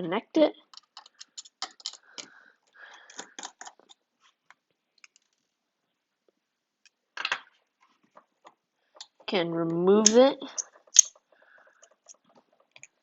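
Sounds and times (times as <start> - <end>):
screwdriver clicking and scraping: 0.7 - 2.0, 10.0 - 11.2.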